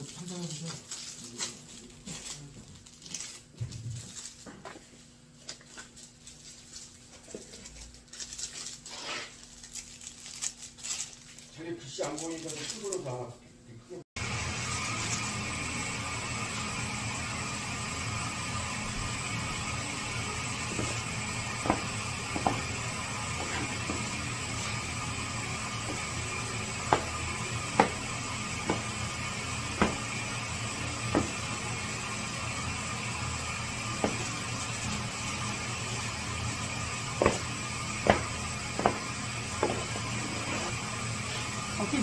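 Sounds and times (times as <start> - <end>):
machine hum: 14.2 - 42.0.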